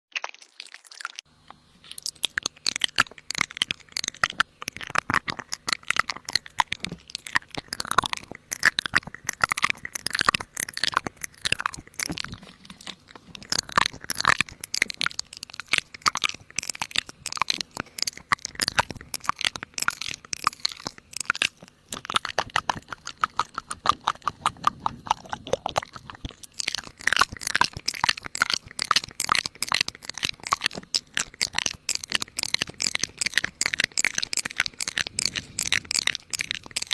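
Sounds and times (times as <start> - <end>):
crunching and crackling: 0.1 - 36.9.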